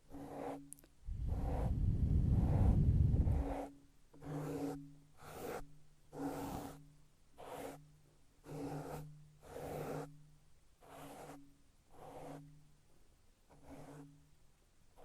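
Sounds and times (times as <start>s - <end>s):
faint low hum: 0.8s - 3.6s.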